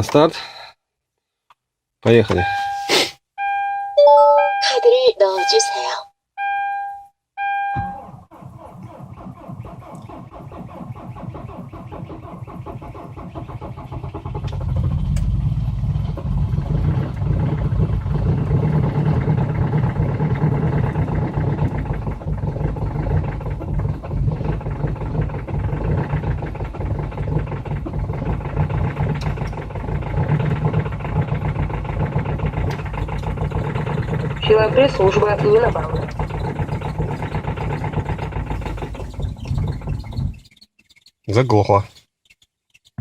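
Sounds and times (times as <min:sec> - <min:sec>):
starter motor cranking: 0:08.0 - 0:43.0
diesel engine clattering: 0:08.8 - 0:43.0.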